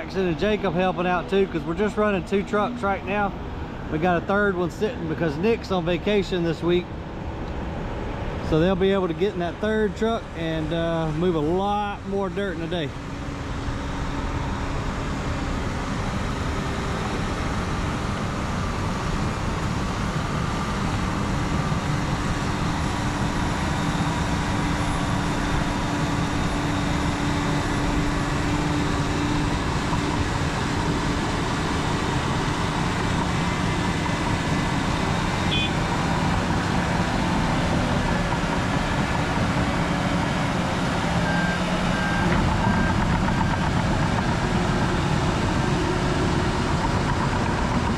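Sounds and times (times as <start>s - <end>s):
heavy diesel earthmoving equipment: 0.0s - 47.9s
short beeps: 35.5s - 35.8s.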